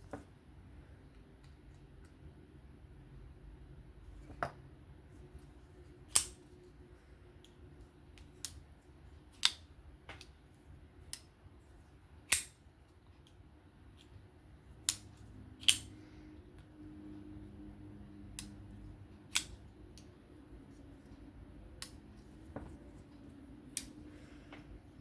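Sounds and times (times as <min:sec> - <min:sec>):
folding knife blade clicking: 0:14.9 - 0:15.9, 0:19.3 - 0:19.6.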